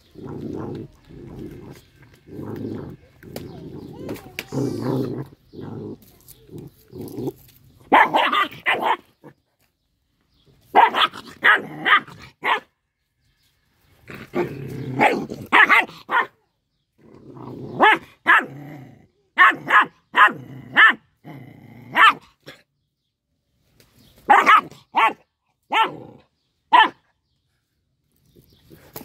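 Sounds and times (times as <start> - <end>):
small dog growling: 0.0 - 7.4, 14.1 - 15.6, 17.0 - 19.2
small dog barking: 7.9 - 9.1, 10.7 - 12.7, 15.0 - 16.4, 17.8 - 18.5, 19.4 - 21.0, 21.9 - 22.3, 24.3 - 26.1, 26.7 - 27.0.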